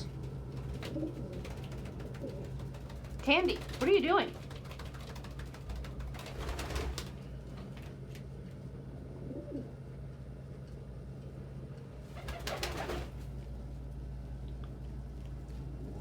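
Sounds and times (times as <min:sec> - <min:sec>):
steady low hum: 0:00.0 - 0:16.0
pigeons cooing: 0:00.6 - 0:02.9, 0:09.2 - 0:09.8.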